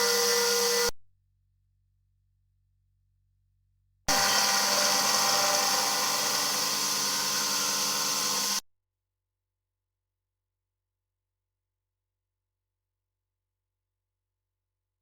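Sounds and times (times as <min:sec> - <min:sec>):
machine spindle cutting metal: 0:00.0 - 0:00.9, 0:04.1 - 0:08.6.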